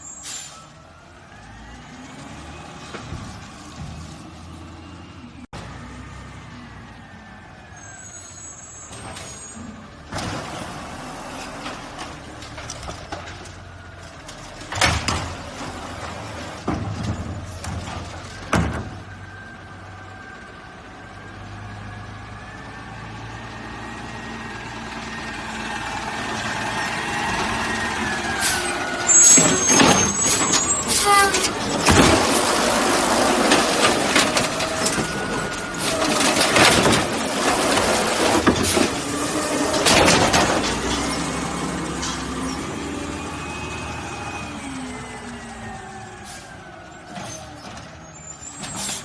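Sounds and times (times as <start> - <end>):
air brake squeals: 0.0 - 0.8, 7.7 - 9.8, 28.4 - 31.9, 46.1 - 49.0
garbage truck engine running: 9.1 - 49.0.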